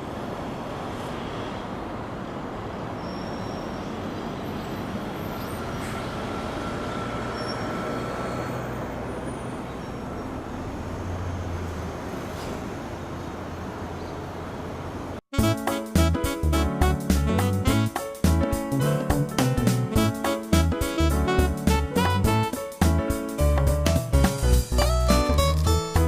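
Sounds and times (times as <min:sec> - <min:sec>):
traffic noise: 0:00.0 - 0:15.3
faint thin high squeal: 0:03.0 - 0:04.0, 0:06.8 - 0:10.3.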